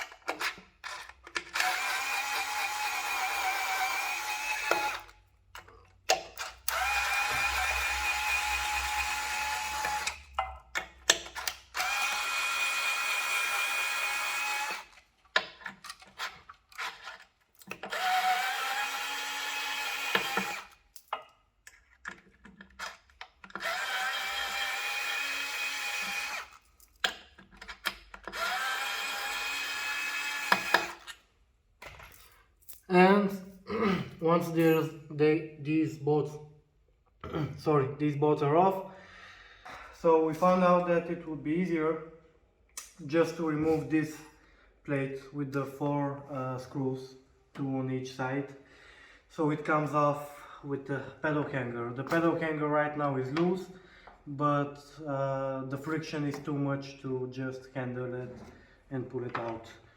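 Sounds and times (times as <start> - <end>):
power drill whining: 0.8 - 5.2, 6.7 - 10.3, 11.4 - 15.0, 16.7 - 20.8, 23.5 - 26.6, 28.2 - 31.2.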